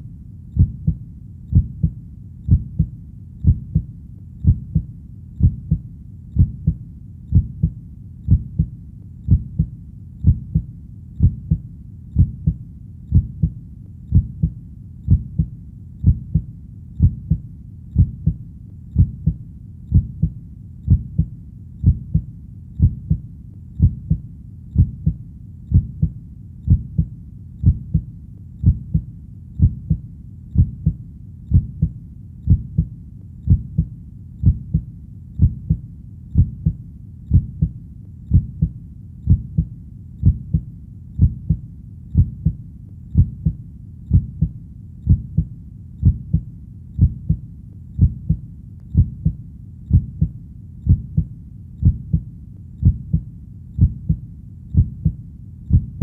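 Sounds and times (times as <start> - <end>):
faint low hum: 0.0 - 56.0
heartbeat double thump: 0.6 - 5.8, 6.4 - 8.7, 9.3 - 11.6, 12.2 - 17.4, 19.0 - 23.2, 23.8 - 24.2, 24.8 - 30.0, 30.6 - 32.9, 33.5 - 35.8, 36.4 - 41.6, 42.2 - 42.6, 43.2 - 46.4, 47.0 - 47.4, 48.0 - 48.4, 49.0 - 50.3, 50.9 - 52.2, 52.8 - 53.2, 53.8 - 54.2, 54.8 - 56.0.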